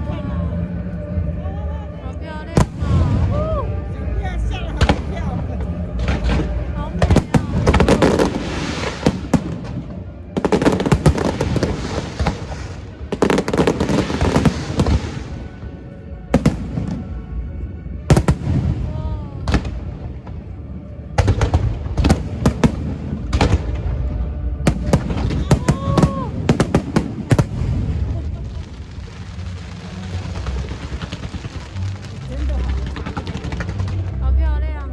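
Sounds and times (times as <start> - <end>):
fireworks crackling: 2.5 - 3.7, 4.4 - 17.1, 18.1 - 20.5, 21.2 - 34.4
fireworks bangs: 2.6 - 3.6, 4.7 - 15.5, 16.3 - 17.0, 18.1 - 20.4, 21.2 - 24.0, 24.7 - 34.2.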